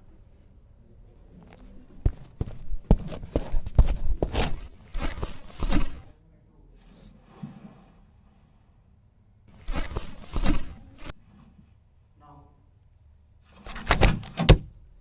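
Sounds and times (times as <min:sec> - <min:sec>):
rustling: 0:01.2 - 0:06.1, 0:09.5 - 0:11.2, 0:13.5 - 0:14.8
sharp clicks and knocks: 0:01.5 - 0:06.0, 0:13.7 - 0:14.8.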